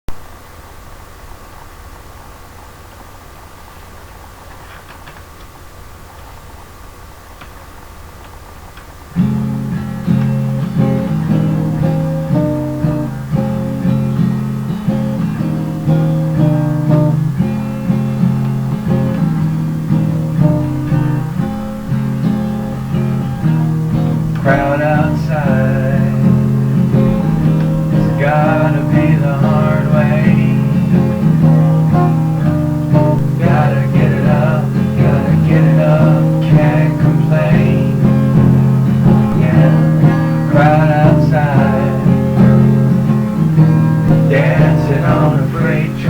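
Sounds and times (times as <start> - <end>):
low backing: 8.3 - 46.0
strummed acoustic guitar: 9.0 - 46.0
higher wavering melody: 9.8 - 36.8.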